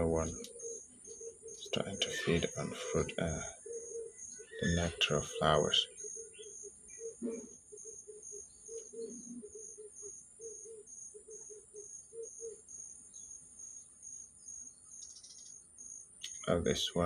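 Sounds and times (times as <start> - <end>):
insects trilling: 0.0 - 17.0
high chirp: 4.3 - 7.5.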